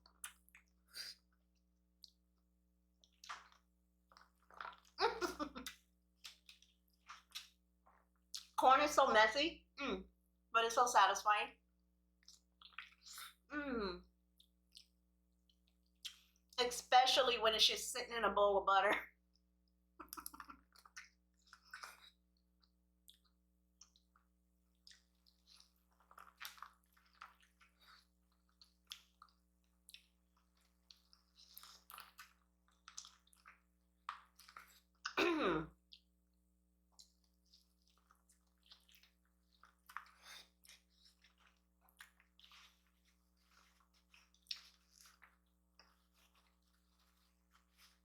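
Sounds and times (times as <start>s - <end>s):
wet chewing: 3.0s - 8.6s, 12.2s - 13.5s, 14.3s - 16.6s, 20.0s - 35.2s, 36.9s - 48.0s
lip smacks: 20.0s - 22.1s.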